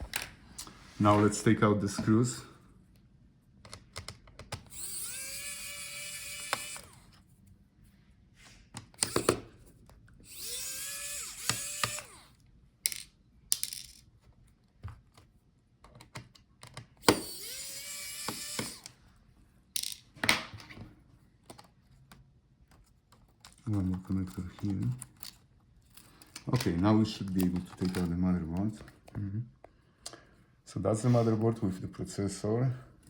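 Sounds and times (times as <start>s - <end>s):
electric screwdriver whine: 4.7s - 7.1s, 9.0s - 9.4s, 10.2s - 12.4s, 17.0s - 19.0s.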